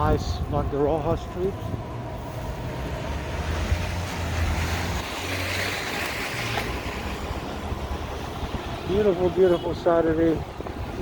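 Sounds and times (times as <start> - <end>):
tyre hiss on slushy street: 2.2 - 7.5.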